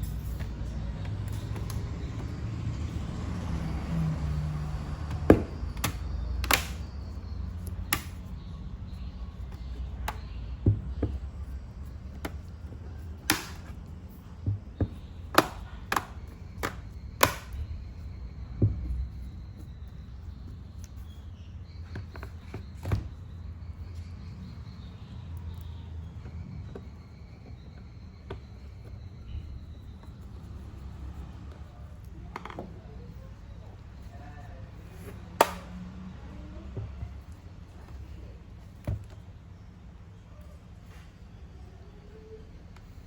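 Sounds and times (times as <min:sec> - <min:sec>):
sharp clicks and taps: 0:05.0 - 0:08.5, 0:14.4 - 0:17.6.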